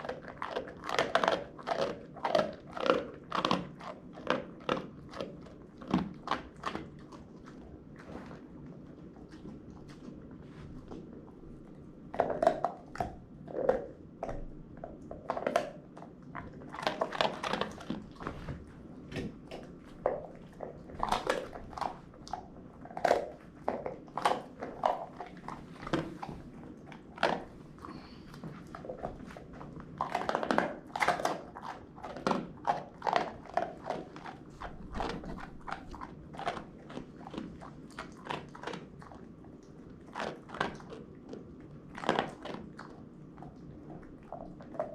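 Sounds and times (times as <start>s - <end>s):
dog chewing crunchy toy: 0.0s - 44.9s.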